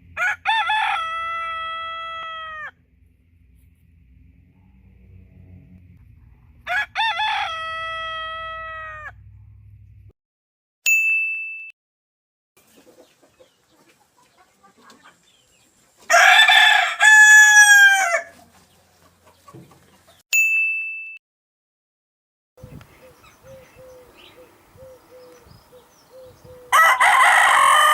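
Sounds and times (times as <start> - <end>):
rooster crowing: 0.2 - 2.8, 6.5 - 9.3, 16.1 - 18.4, 26.5 - 27.9
bell-like ding: 10.9 - 11.8, 20.4 - 21.2.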